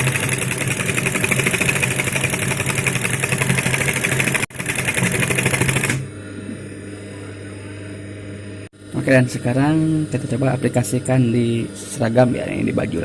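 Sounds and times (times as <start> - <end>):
sewing machine needle clatter: 0.0 - 6.0
steady motor hum: 0.0 - 13.0.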